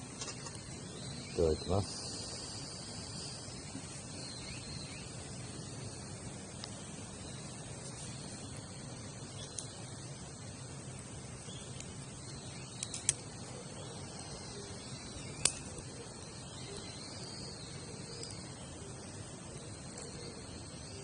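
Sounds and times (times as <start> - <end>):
campfire crackling and popping: 0.0 - 1.5, 2.2 - 21.0
faint high chirps: 0.2 - 21.0.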